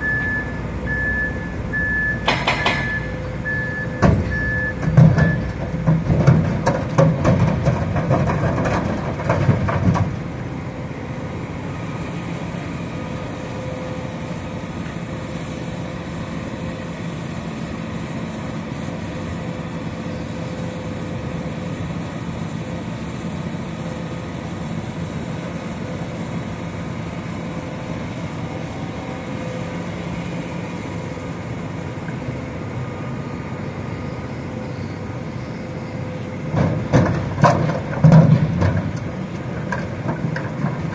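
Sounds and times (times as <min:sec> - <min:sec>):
diesel engine drone: 0:00.0 - 0:40.9
machinery clatter and knocks: 0:02.2 - 0:03.0, 0:04.0 - 0:10.3, 0:36.5 - 0:40.9.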